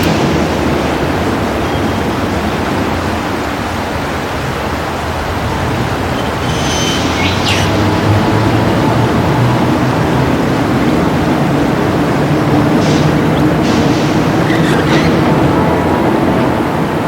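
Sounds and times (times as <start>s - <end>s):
loud rumbling noise: 0.0s - 17.0s
high bird chirps: 6.1s - 8.0s.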